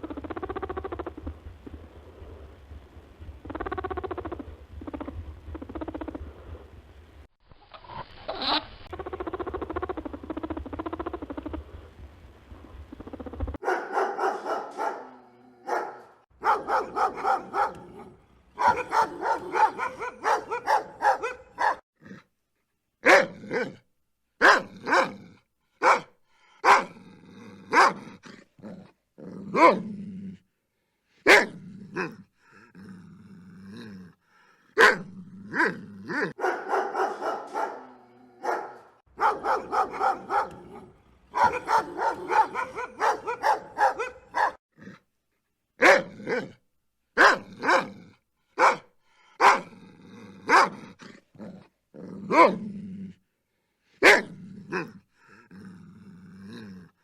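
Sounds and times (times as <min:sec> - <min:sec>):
dogs barking: 0:13.6 - 0:21.8, 0:23.0 - 0:23.8, 0:24.4 - 0:25.2, 0:25.8 - 0:27.0, 0:27.7 - 0:28.1, 0:31.3 - 0:31.5, 0:34.8 - 0:35.0, 0:35.6 - 0:44.6, 0:45.8 - 0:46.5, 0:47.2 - 0:47.9, 0:48.6 - 0:49.7, 0:50.5 - 0:50.8, 0:54.0 - 0:54.3.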